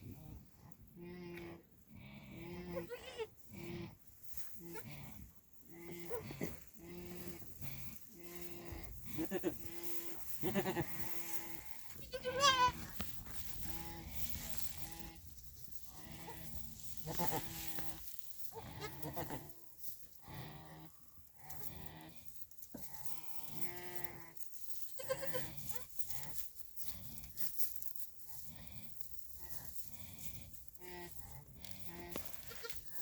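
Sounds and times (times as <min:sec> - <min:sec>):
goats snoring: 0:00.0 - 0:12.1, 0:12.7 - 0:24.4, 0:28.3 - 0:33.0
goat wavering call: 0:12.0 - 0:12.9.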